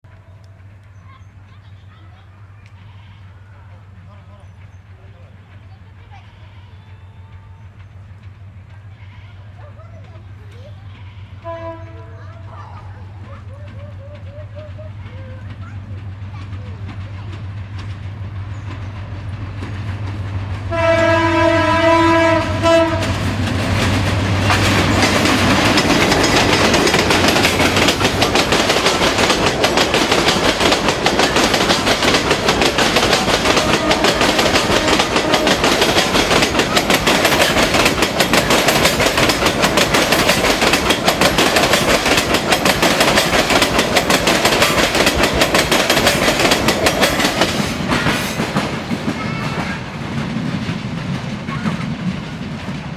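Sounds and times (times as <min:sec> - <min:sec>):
diesel locomotive engine hum: 0:00.0 - 0:52.9
train wheels clickety-clack: 0:04.0 - 0:52.9
train horn: 0:10.9 - 0:12.3, 0:20.7 - 0:23.3, 0:33.3 - 0:36.4.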